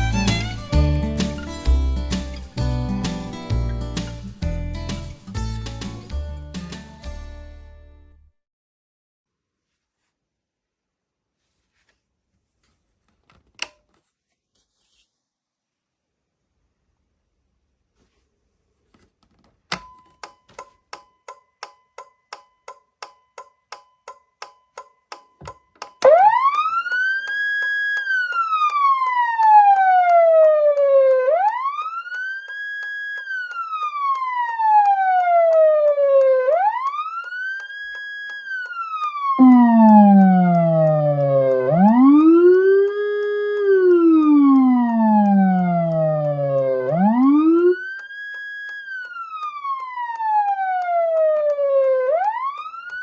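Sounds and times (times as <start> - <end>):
deep siren tone sweeping: 26.0 - 27.5, 28.1 - 32.0, 33.4 - 37.8, 38.7 - 47.9, 49.1 - 53.0
electronic siren wail: 26.0 - 53.0.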